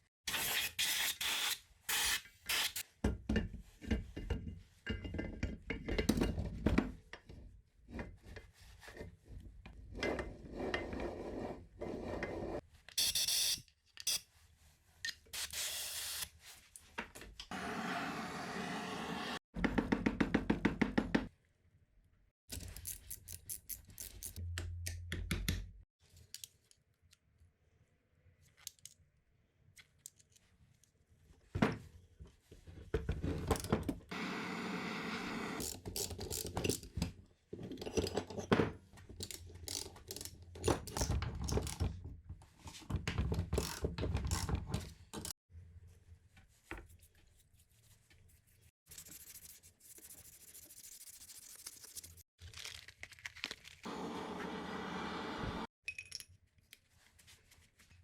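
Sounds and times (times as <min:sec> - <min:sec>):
tools clicking knocking and scraping: 0:22.5 - 0:27.2, 0:35.6 - 0:42.0, 0:42.9 - 0:45.4.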